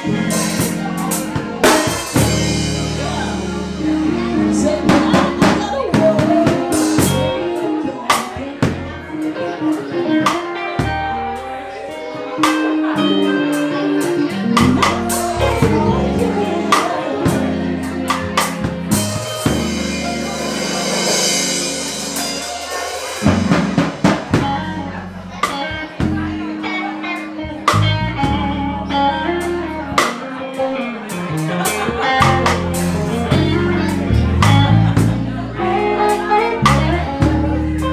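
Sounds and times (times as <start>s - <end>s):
stepping bass line: 0.0s - 7.4s, 14.4s - 26.6s, 31.7s - 35.6s
drum kit with snare and rim hits: 0.0s - 9.0s, 10.2s - 11.1s, 12.4s - 26.3s, 27.6s - 28.6s, 29.4s - 37.9s.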